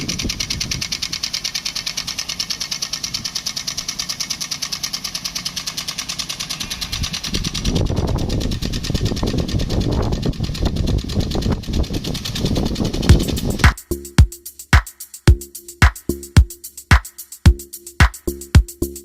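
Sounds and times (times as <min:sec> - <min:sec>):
small engine clattering: 0:00.0 - 0:13.8.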